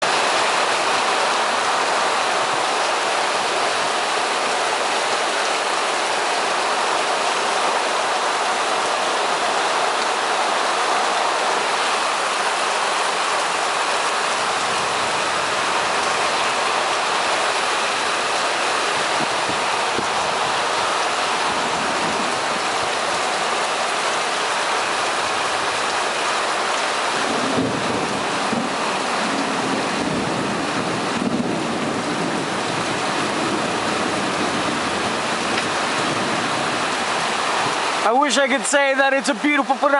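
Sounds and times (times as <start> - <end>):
heavy rain pouring: 0.0 - 39.9
low rumble of thunder: 27.2 - 36.8.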